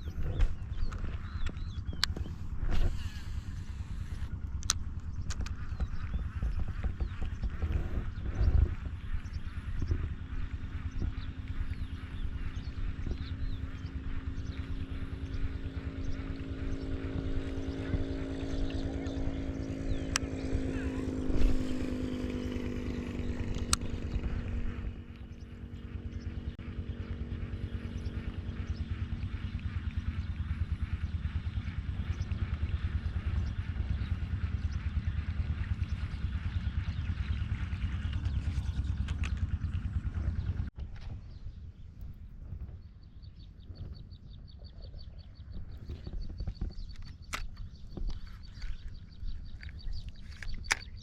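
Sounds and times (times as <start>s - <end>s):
bird chirping: 0.0s - 51.0s
irregular low rumble: 0.0s - 51.0s
vehicle engine droning: 0.0s - 51.0s
sharp click: 49.6s - 51.0s.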